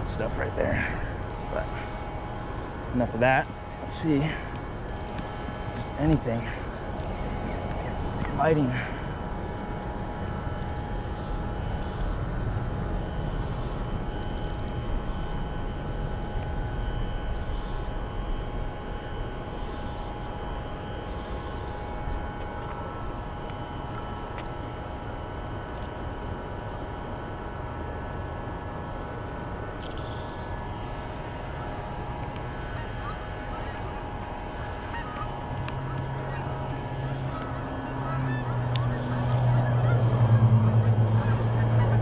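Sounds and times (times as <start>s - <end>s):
mechanical drone: 0.0s - 42.0s
low rushing noise: 30.4s - 42.0s.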